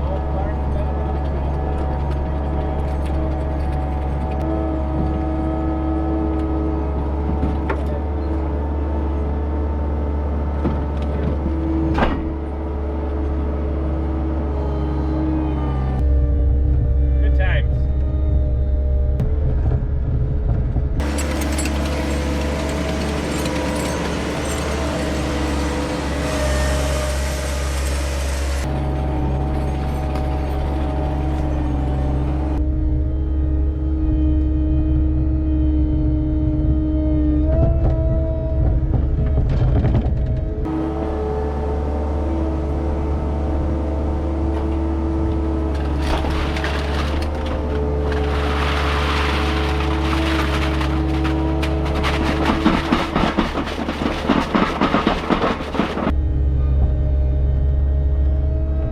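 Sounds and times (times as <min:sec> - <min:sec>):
skid steer engine running: 0:00.0 - 0:58.9
crackling clattering noise: 0:45.7 - 0:56.2.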